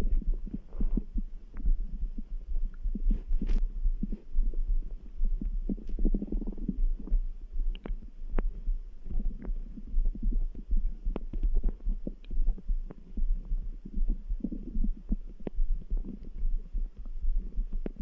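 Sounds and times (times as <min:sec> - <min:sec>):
heartbeat thumping: 0:00.0 - 0:18.0
stomach gurgling: 0:00.0 - 0:18.0
small pops and clicks: 0:07.7 - 0:09.6.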